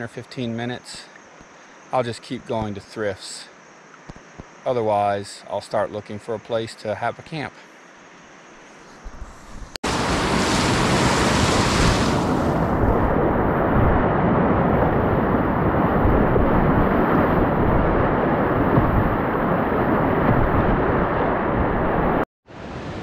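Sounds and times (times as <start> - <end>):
whitewater rushing: 9.9 - 12.8
low rumbling on microphone: 12.6 - 21.9.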